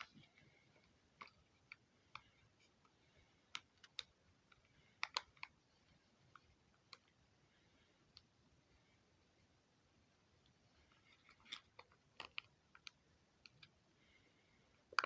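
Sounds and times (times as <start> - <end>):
plastic toy parts clicking: 3.5 - 5.6.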